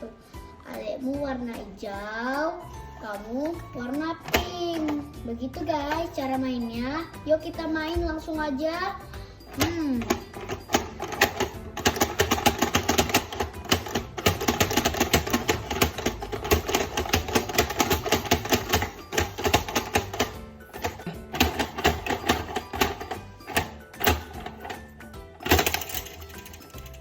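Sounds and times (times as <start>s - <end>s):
plastic hammers tapping: 4.2s - 5.1s, 9.5s - 27.0s.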